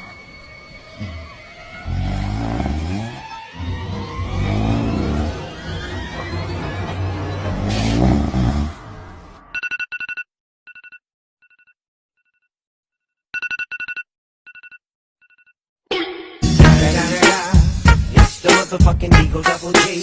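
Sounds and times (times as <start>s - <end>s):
rasping snore: 1.0s - 5.6s, 7.5s - 9.0s.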